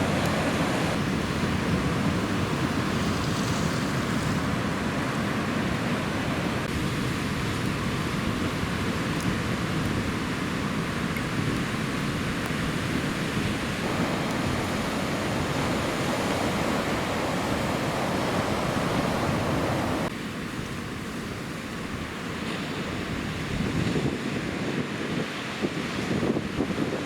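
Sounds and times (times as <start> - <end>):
ocean surf breaking: 0.0 - 27.0
wind buffeting microphone: 0.0 - 27.0.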